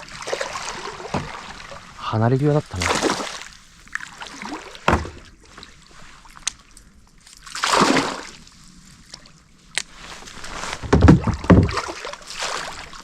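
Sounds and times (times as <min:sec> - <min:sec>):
fish splashing in water: 0:02.7 - 0:05.4, 0:07.5 - 0:08.4, 0:10.4 - 0:13.0.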